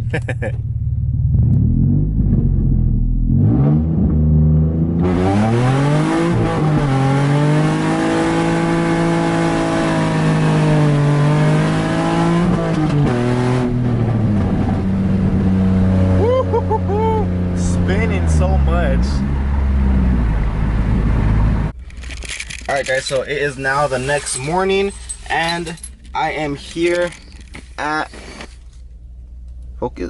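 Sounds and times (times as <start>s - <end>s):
car engine revving: 0.1s - 29.8s
harsh exhaust rasp: 23.0s - 29.0s.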